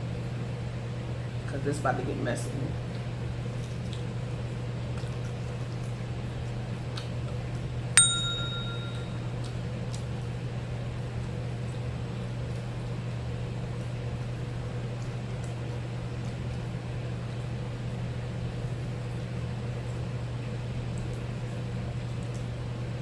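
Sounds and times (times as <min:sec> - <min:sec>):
steady low hum: 0:00.0 - 0:23.0
sharp ringing clink: 0:08.0 - 0:09.2.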